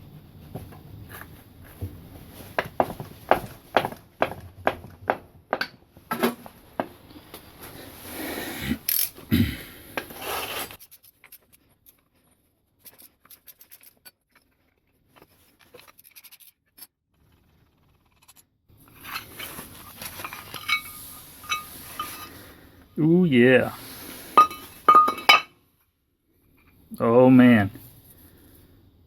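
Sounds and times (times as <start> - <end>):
metal vise clicking and scraping: 19.0 - 22.4, 24.4 - 25.5
steady hiss: 19.3 - 25.3.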